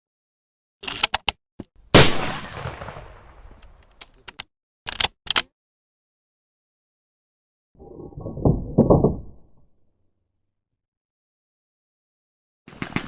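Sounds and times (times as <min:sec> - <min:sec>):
sharp clicks: 0:00.8 - 0:01.4, 0:03.5 - 0:05.5
loud gunshot with echo: 0:02.0 - 0:03.3.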